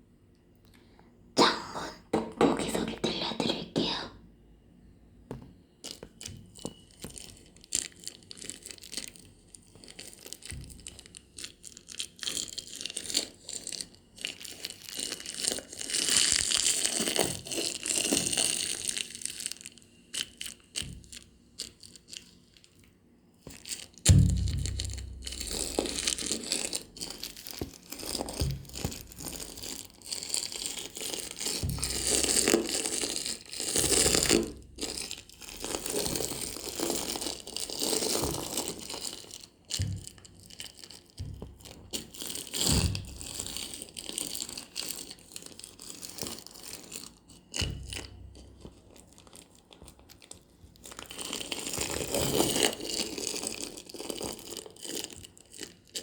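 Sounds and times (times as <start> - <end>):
crinkling and crunching objects: 5.3 - 56.0
soft thumps: 24.1 - 26.5, 27.6 - 29.6, 31.6 - 32.6, 39.8 - 40.2, 41.2 - 42.0, 42.6 - 43.6.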